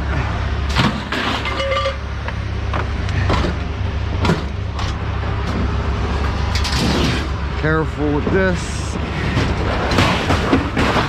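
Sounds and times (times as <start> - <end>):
steady engine hum: 0.0 - 11.0
metallic ring: 1.4 - 2.1.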